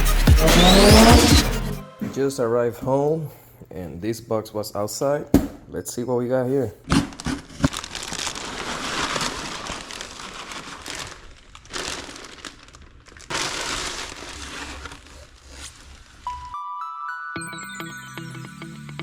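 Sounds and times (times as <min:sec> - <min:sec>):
packaging crinkling and rustling: 0:06.8 - 0:16.5.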